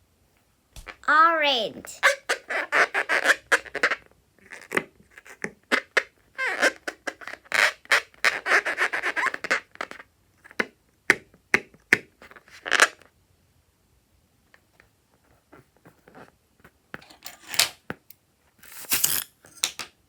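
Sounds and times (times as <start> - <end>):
rubber balloon squeaking: 2.0 - 4.0, 5.8 - 9.8.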